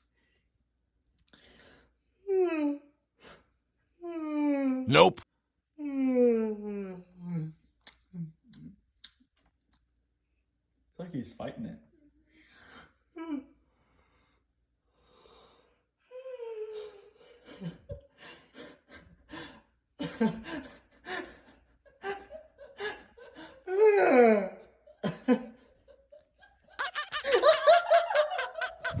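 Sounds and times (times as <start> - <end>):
person laughing: 28.6 - 29.0.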